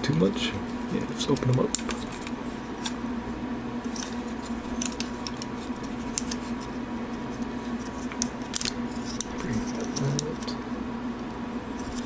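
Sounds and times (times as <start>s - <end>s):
steady low hum: 0.0s - 12.0s
toy joints clicking: 4.0s - 6.4s.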